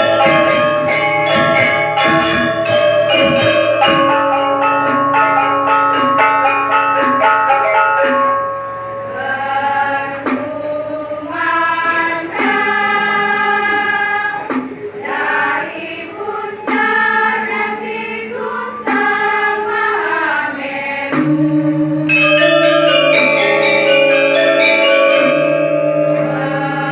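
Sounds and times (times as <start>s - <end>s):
choir singing: 0.0s - 4.1s, 9.0s - 26.9s
bell-like struck notes: 0.0s - 14.2s, 21.1s - 26.9s.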